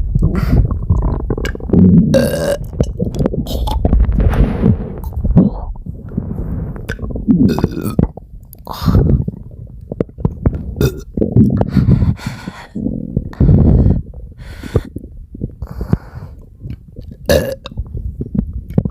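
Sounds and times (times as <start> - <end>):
stomach gurgling and rumbling: 0.0 - 18.9
person burping: 0.2 - 3.8, 6.9 - 9.3, 10.1 - 11.6, 17.2 - 17.8.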